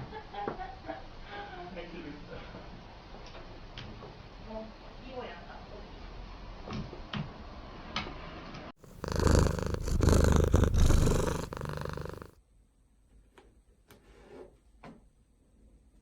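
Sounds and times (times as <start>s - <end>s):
cat purring: 8.8s - 12.3s.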